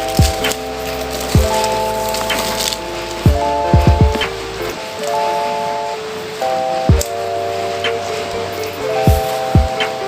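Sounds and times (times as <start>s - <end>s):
electronic music chords: 0.0s - 10.0s
deep kick drum: 0.1s - 0.5s, 1.4s - 1.6s, 3.2s - 4.4s, 9.1s - 9.8s.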